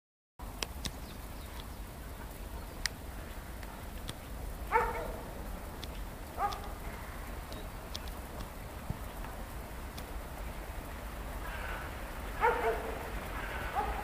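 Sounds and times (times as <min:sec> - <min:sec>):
faint clicks: 0:00.5 - 0:04.3, 0:05.7 - 0:10.5
dog barking: 0:04.7 - 0:05.3, 0:06.4 - 0:06.8, 0:12.4 - 0:13.1, 0:13.7 - 0:14.0.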